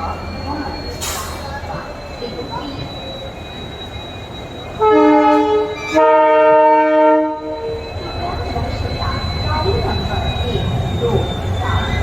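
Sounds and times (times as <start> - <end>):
locomotive air horn blasts: 4.8 - 7.6.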